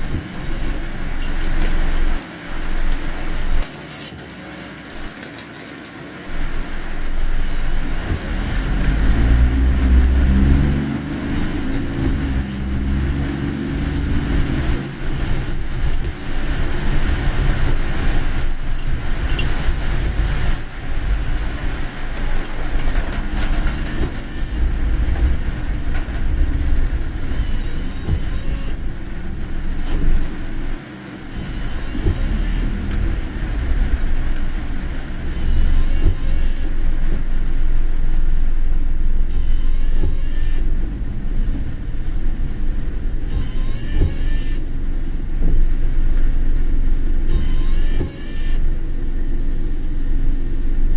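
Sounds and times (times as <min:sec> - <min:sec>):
car engine and road noise: 0:00.0 - 0:50.9.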